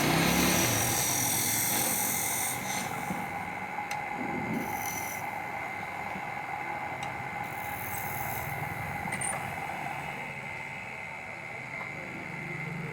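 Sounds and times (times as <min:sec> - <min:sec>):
wood lathe whining: 0:00.0 - 0:10.2.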